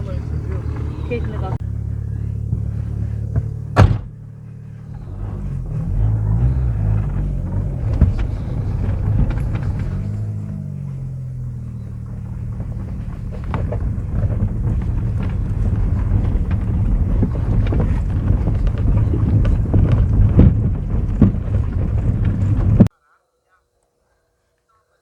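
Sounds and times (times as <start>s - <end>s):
vehicle engine rumbling: 0.0s - 22.9s
wind buffeting microphone: 5.0s - 22.9s.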